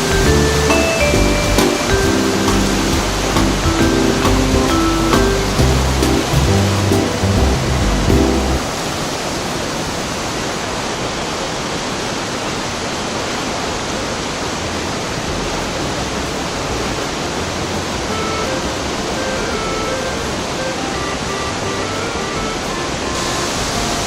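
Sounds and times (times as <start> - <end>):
faint music notes: 0.0 - 8.6, 17.4 - 24.0
waterfall rushing: 0.0 - 24.0.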